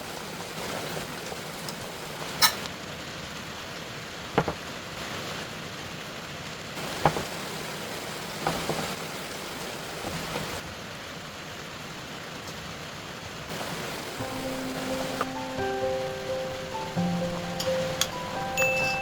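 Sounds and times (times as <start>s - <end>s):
steady rain: 0.0s - 19.0s.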